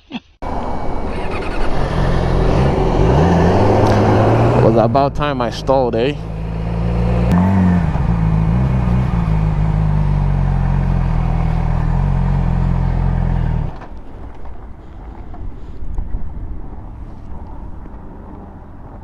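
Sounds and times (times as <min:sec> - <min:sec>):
motorcycle engine at low revs: 0:01.0 - 0:14.0
faint wind noise on microphone: 0:14.0 - 0:19.0.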